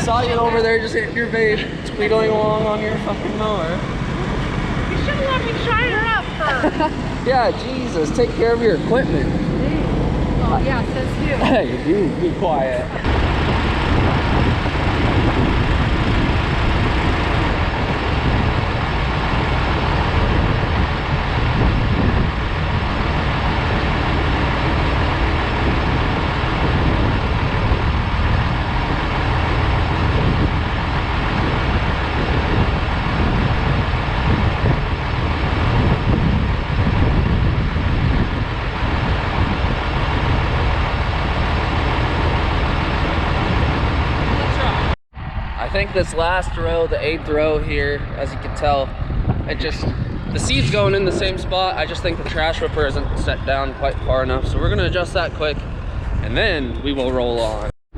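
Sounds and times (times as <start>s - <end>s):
tractor engine running: 0.0s - 45.0s.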